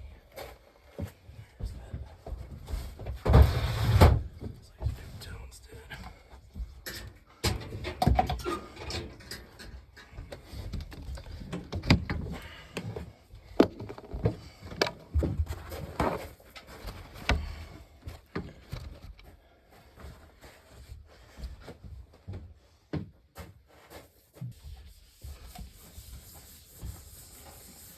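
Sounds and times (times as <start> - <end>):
objects being handled: 9.5 - 17.5.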